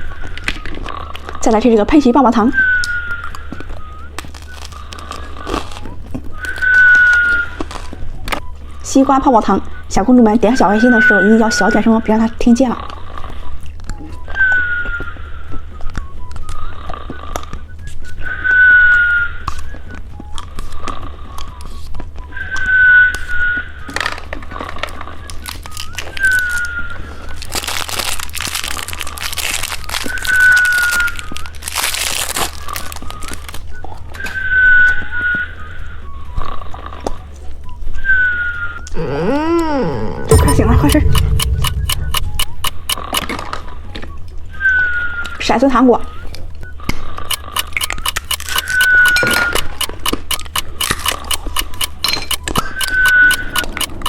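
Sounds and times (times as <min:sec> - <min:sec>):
candy crunched and chewed: 0:03.3 - 0:08.5, 0:23.9 - 0:33.8
candy wrapper crinkling: 0:27.5 - 0:33.6
short high whistle tone: 0:40.3 - 0:43.3
hard candies clicking: 0:47.3 - 0:54.0.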